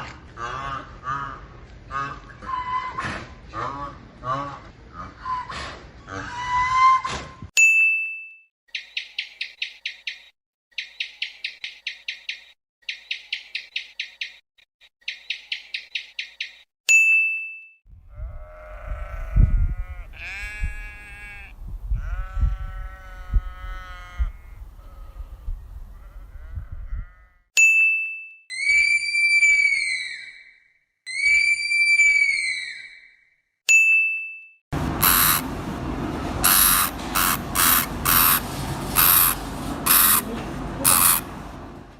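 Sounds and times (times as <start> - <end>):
bird chirping: 8.7 - 14.4, 15.0 - 16.7, 35.0 - 35.4, 39.0 - 40.3, 40.9 - 41.2
sheep bleating: 18.1 - 25.0
steady low rumble: 34.8 - 41.9
animal hissing: 35.0 - 35.4, 36.4 - 41.2.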